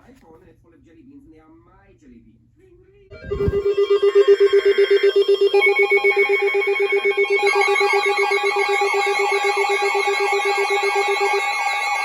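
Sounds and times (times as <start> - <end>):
steady high alert tones: 3.1 - 12.0
warbling siren-like alert tone: 3.1 - 12.0
rapidly pulsing ringing tone: 3.2 - 12.0.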